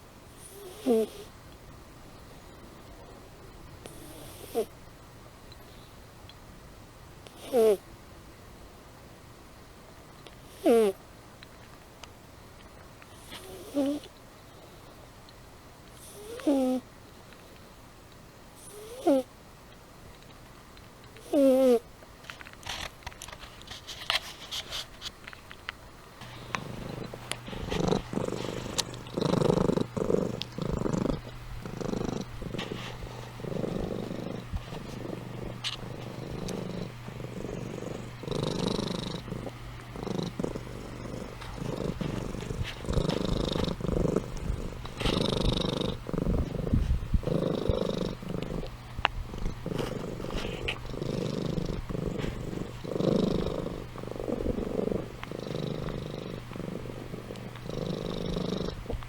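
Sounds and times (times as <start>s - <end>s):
cat purring: 0.4s - 1.3s, 3.8s - 4.7s, 7.2s - 7.8s, 10.2s - 11.0s, 13.1s - 14.8s, 15.9s - 16.9s, 18.6s - 19.3s, 21.2s - 21.9s, 26.2s - 59.0s.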